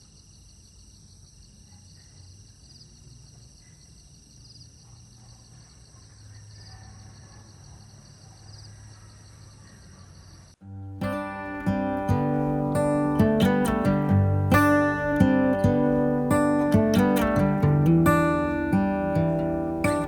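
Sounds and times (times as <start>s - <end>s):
insects trilling: 0.0s - 10.6s.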